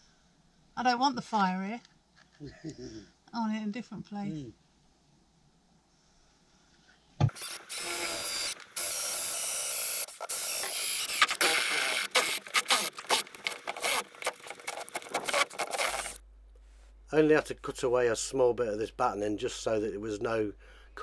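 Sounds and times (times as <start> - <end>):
power tool cutting wood: 7.3 - 16.2.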